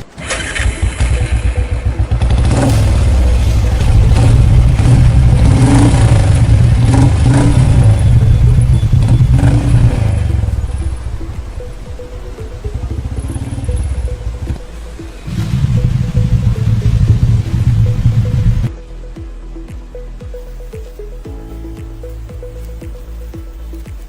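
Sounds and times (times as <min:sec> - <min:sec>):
motorcycle engine running: 0:00.0 - 0:18.8.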